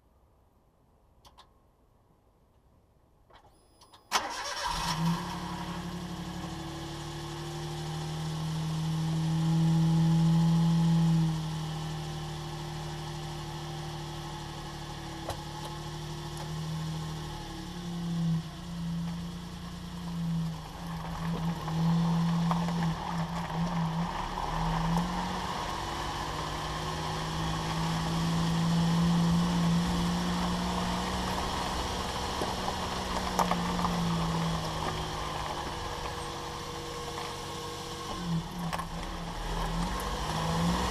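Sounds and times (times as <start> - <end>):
drivetrain low hum: 15.0 - 40.9.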